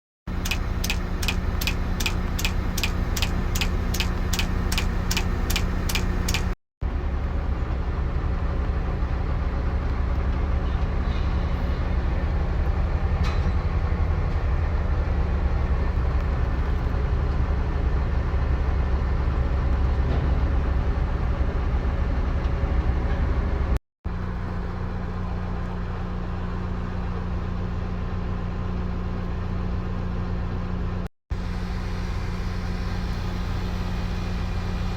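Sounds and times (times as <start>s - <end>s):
heavy machinery engine droning: 0.3s - 34.9s
rapid ticking clicks: 0.4s - 6.6s.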